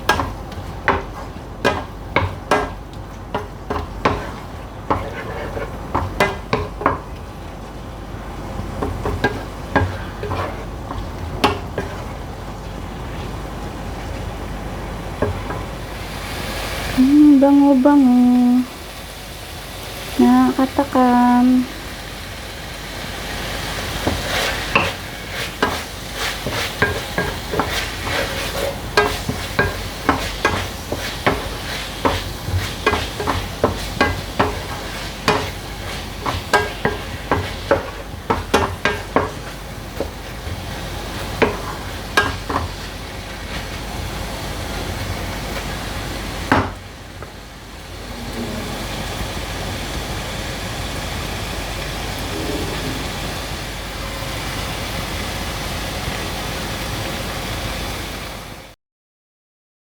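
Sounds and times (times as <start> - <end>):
spatula scraping frying pan: 0.0 - 7.1, 8.7 - 12.2, 24.0 - 43.8, 47.9 - 49.4
meat sizzling: 0.0 - 17.8, 18.5 - 58.4.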